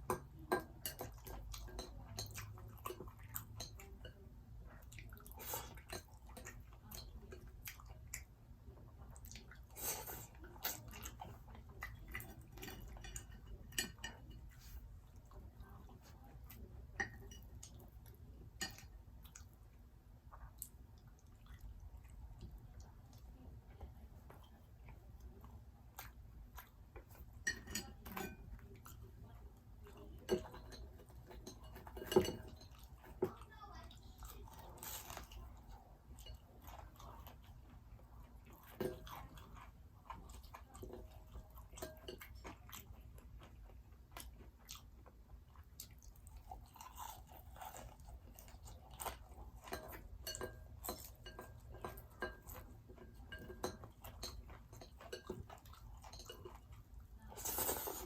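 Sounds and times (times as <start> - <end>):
person chewing food: 4.8 - 33.5, 34.2 - 58.0
person chewing crunchy food: 36.1 - 58.0.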